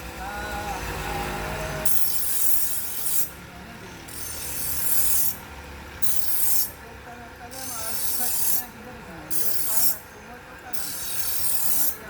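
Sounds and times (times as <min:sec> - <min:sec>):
knife sharpening strokes: 0:01.9 - 0:03.3, 0:04.1 - 0:05.4, 0:06.0 - 0:06.8, 0:07.6 - 0:08.7, 0:09.3 - 0:10.0, 0:10.8 - 0:12.0.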